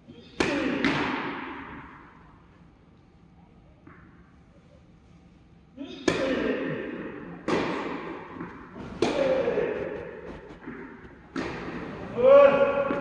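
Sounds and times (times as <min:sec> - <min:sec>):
tennis racket hitting ball: 0:07.4 - 0:13.0.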